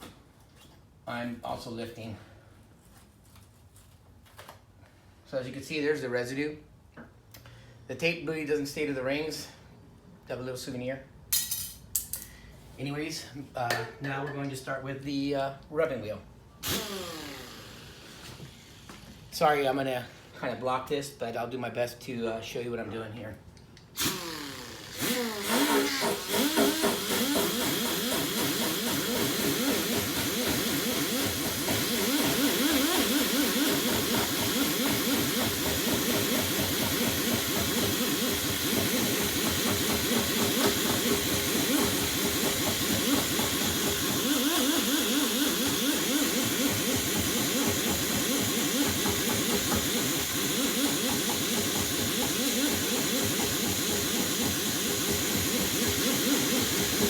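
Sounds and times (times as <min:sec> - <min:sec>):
air grinder hissing: 0:24.0 - 0:57.0.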